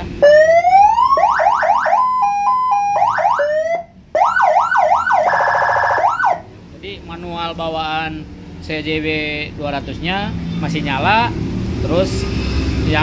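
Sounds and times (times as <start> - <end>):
two-note hi-lo siren: 0.2 - 6.4
police siren switching tones: 0.2 - 6.5
siren yelps: 0.2 - 6.5.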